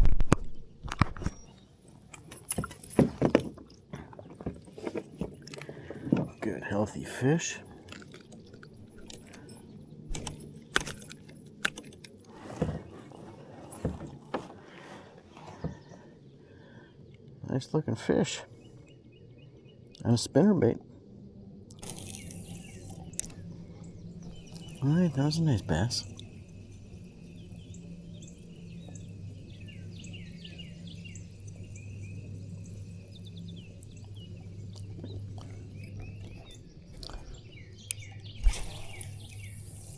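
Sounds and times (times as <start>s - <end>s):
steady low hum: 0.0s - 39.9s
small birds chirping: 0.4s - 3.0s, 15.3s - 39.9s
light metallic rattling: 1.0s - 3.8s, 4.6s - 14.6s.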